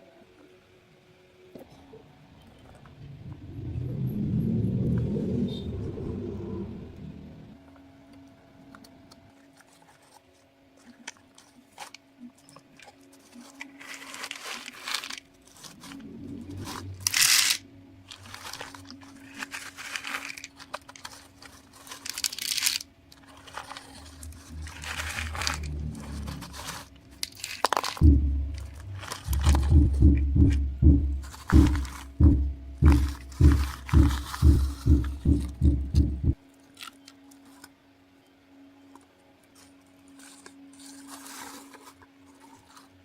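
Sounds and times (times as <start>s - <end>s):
faint steady hum: 0.0s - 43.0s
low engine rumble: 2.2s - 7.6s, 15.5s - 19.4s, 23.1s - 36.4s
corn kernels crunching and rustling: 9.3s - 35.8s, 39.0s - 43.0s.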